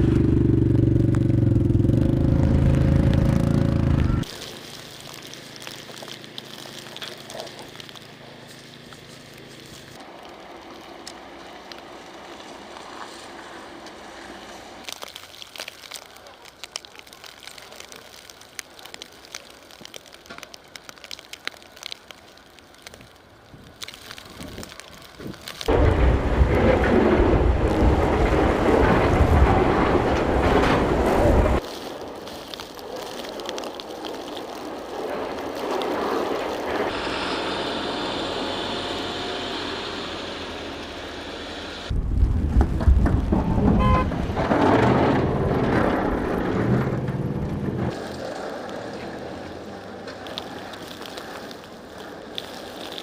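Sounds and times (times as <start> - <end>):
light ticks and crackles: 4.3 - 25.7, 31.6 - 36.9, 47.9 - 53.0.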